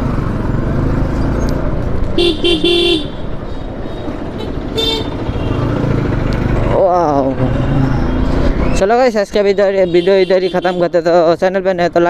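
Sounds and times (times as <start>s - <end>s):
motorcycle running: 0.0s - 8.8s
vehicle horn honking: 2.2s - 3.2s, 3.9s - 5.8s, 9.8s - 10.9s.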